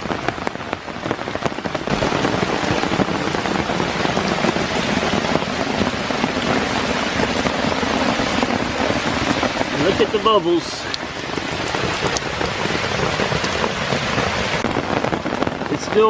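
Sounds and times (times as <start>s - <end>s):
heavy rain hissing: 0.0s - 16.0s
raindrops ticking on surfaces: 0.0s - 16.0s.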